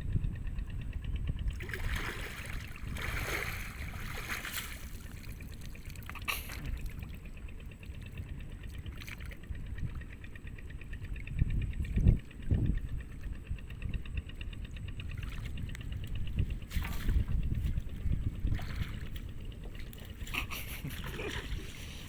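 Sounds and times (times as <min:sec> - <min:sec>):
steady low rumble: 0:00.0 - 0:22.0
water splashing and trickling: 0:01.6 - 0:10.2, 0:15.1 - 0:22.0.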